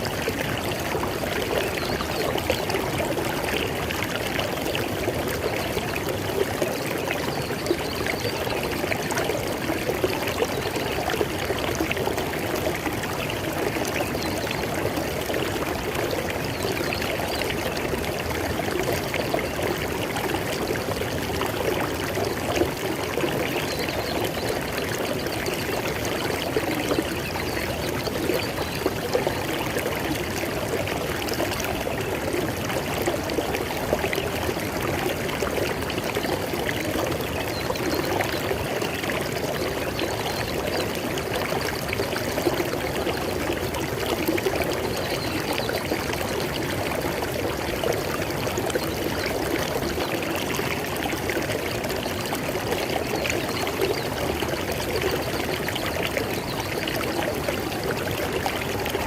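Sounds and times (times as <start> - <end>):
river flowing over stones: 0.0 - 59.0.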